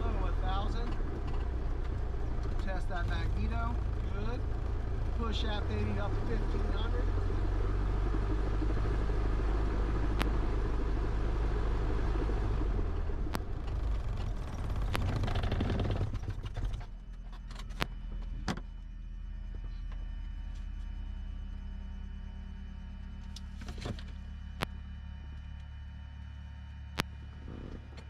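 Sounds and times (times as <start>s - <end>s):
aircraft piston engine idling: 0.0s - 28.0s
faint steady hum: 0.0s - 28.0s.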